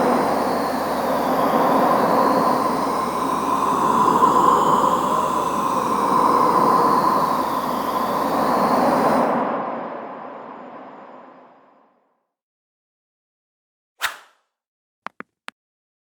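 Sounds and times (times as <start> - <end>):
rumbling noise with held tone: 0.0 - 11.9.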